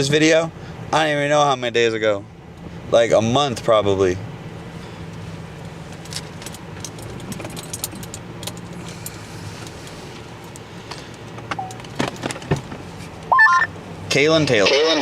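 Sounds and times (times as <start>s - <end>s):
car engine idling: 1.9s - 15.0s
metallic jingling and clicks: 6.0s - 9.2s.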